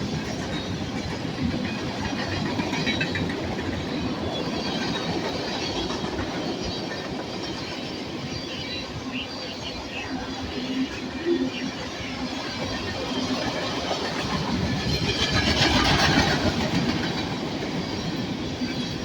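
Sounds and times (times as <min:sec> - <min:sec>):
train wheels clattering on rails: 0:00.0 - 0:19.0.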